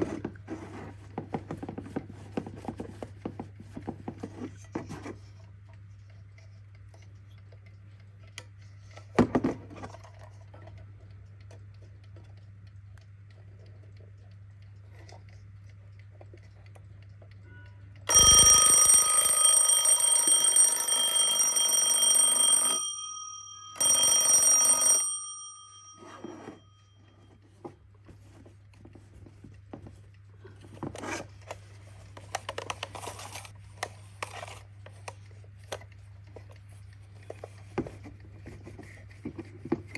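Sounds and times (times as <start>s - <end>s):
twin-bell alarm clock ringing: 18.1s - 26.9s.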